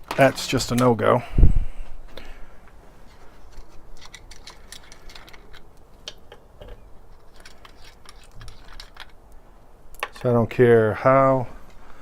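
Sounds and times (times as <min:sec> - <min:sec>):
plastic parts clicking and scraping: 0:03.0 - 0:09.4.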